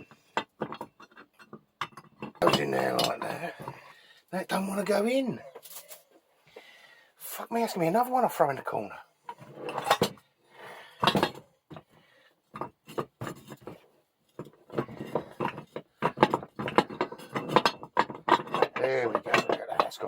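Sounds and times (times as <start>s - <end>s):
steel parts clinking: 0.7s - 3.6s, 5.5s - 6.1s.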